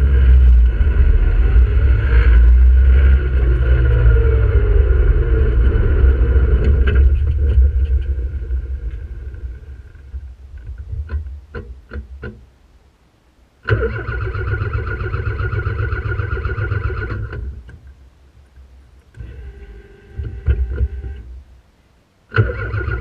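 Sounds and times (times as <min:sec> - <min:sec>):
car engine sputtering and cutting out: 0:00.0 - 0:10.2, 0:13.6 - 0:17.6.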